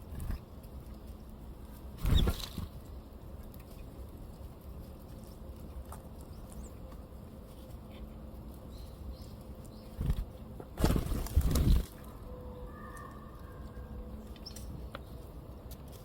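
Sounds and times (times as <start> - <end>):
bird wings flapping: 2.0 - 2.8, 10.0 - 12.2.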